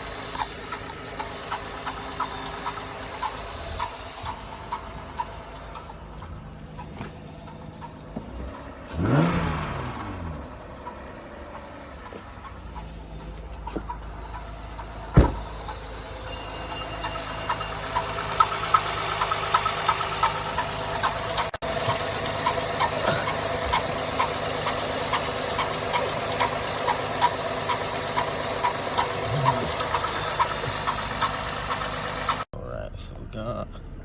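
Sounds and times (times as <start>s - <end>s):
car engine idling: 0.0s - 32.5s
engine tapping: 0.0s - 32.5s
thump: 15.1s - 15.5s.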